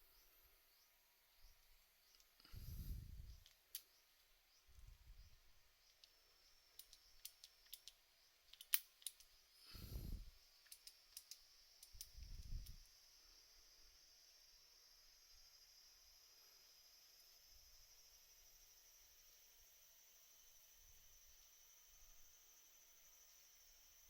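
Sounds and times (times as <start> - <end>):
faint sharp clicks: 2.0 - 2.6, 3.3 - 4.0, 5.9 - 6.2, 6.8 - 9.4, 10.6 - 12.8.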